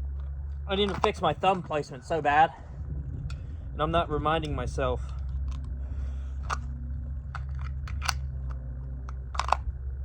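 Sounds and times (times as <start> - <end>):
steady low rumble: 0.0 - 10.0
handgun and holster clicks: 7.3 - 9.7.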